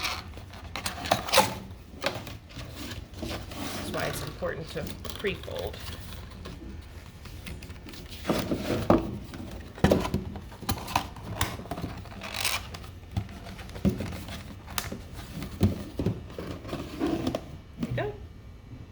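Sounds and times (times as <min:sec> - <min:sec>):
cardboard creasing and scraping: 0:00.0 - 0:17.6
cardboard rustle: 0:00.0 - 0:17.6.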